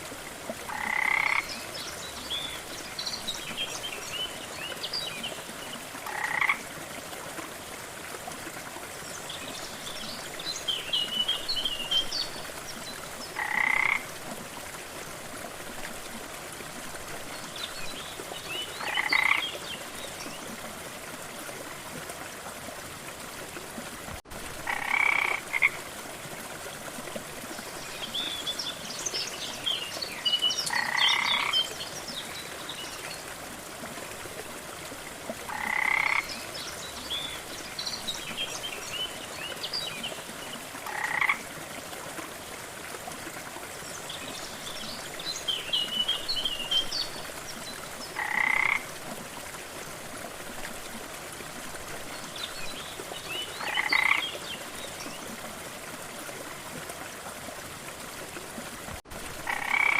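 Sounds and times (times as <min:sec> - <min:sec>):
frogs croaking: 0:00.6 - 0:01.6, 0:06.0 - 0:06.7, 0:13.3 - 0:14.1, 0:18.8 - 0:19.6, 0:24.6 - 0:25.8, 0:30.6 - 0:31.8, 0:35.4 - 0:36.4, 0:40.8 - 0:41.5, 0:48.2 - 0:48.9, 0:53.6 - 0:54.4, 0:59.4 - 0:59.9.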